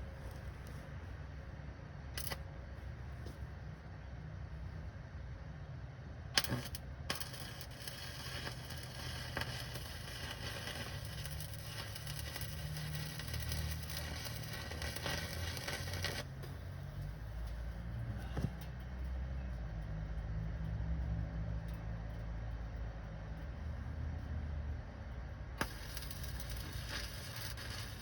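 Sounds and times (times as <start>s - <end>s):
welding arc crackling and sizzling: 2.2s - 2.5s, 6.4s - 20.4s, 25.5s - 28.0s.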